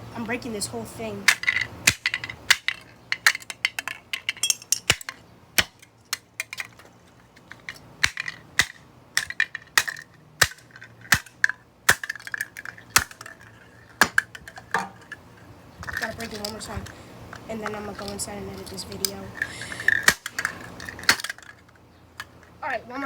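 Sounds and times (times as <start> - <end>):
glass cracking and clinking: 1.3 - 16.8, 17.6 - 22.5.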